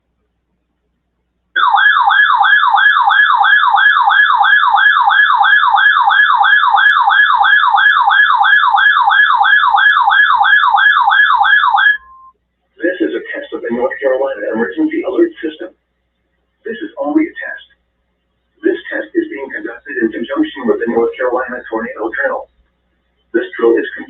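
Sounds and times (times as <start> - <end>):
warbling electronic alert siren: 1.6 - 12.3.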